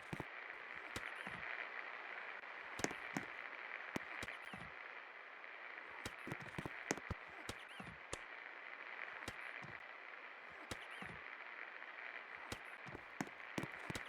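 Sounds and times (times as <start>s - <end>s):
sharp clicks and ticks: 0.0s - 1.4s, 2.8s - 3.4s, 6.0s - 8.3s, 9.3s - 9.8s, 12.5s - 14.0s.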